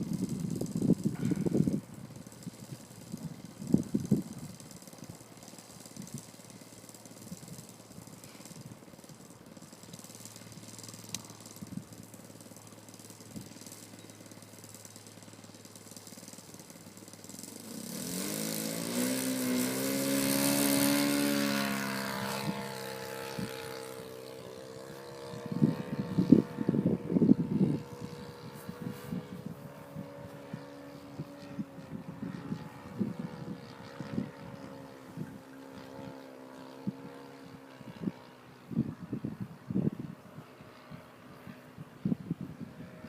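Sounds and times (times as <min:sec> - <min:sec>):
wind gusts on microphone: 0:00.0 - 0:06.4, 0:17.9 - 0:36.1, 0:36.8 - 0:43.0
model plane engine passing: 0:00.0 - 0:43.0.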